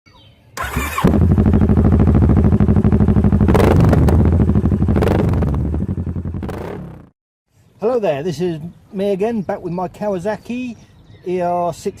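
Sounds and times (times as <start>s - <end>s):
motorcycle engine running loud: 0.6s - 7.1s
sharp exhaust cracks: 0.6s - 7.1s.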